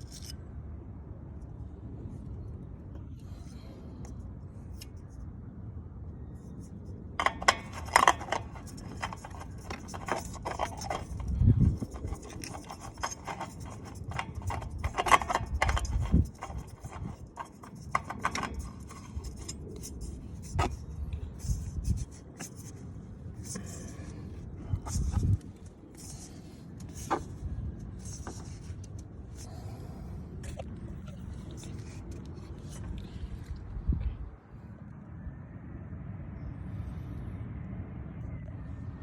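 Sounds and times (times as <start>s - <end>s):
objects being handled: 7.2s - 22.8s, 23.4s - 29.7s.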